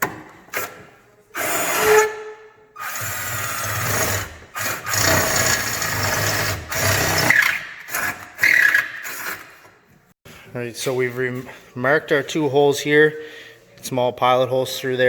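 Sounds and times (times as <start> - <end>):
power drill boring through steel: 2.8 - 9.4.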